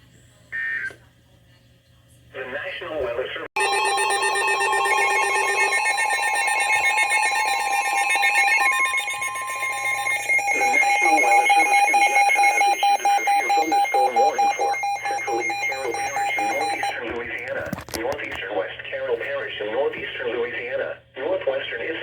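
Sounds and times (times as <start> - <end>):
voice or broadcast audio: 2.3 - 5.8, 9.6 - 22.0
electronic alarm tone: 3.6 - 17.0.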